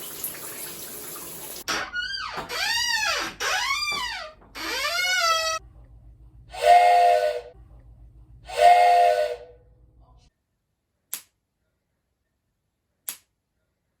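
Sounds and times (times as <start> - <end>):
hissing whistle blasts: 8.5 - 9.6.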